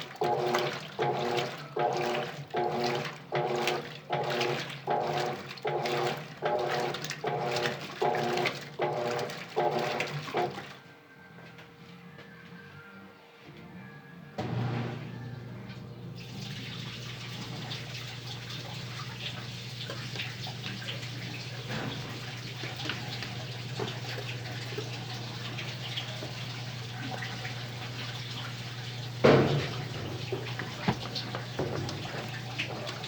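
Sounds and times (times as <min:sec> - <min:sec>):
washing machine running: 0:00.0 - 0:10.8, 0:14.4 - 0:33.0.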